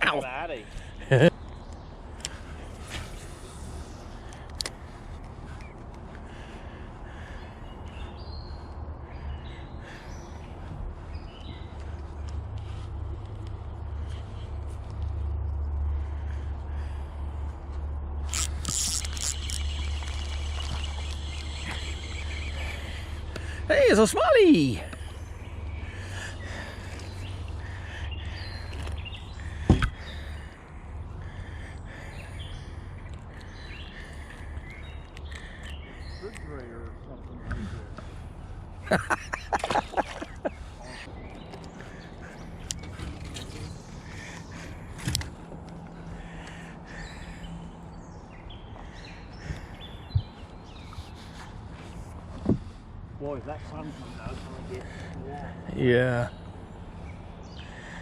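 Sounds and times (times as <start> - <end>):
birds chirping: 0.0 - 58.0
faint bird chirps: 18.7 - 23.6.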